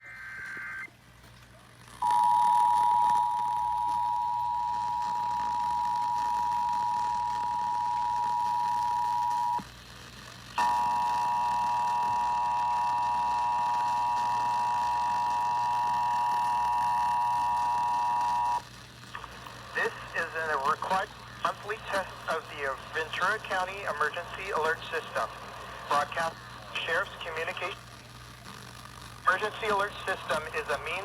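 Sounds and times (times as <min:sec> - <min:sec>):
multi-tone attention tone: 0:02.0 - 0:09.6
two-tone attention signal: 0:02.0 - 0:09.6, 0:10.6 - 0:18.6.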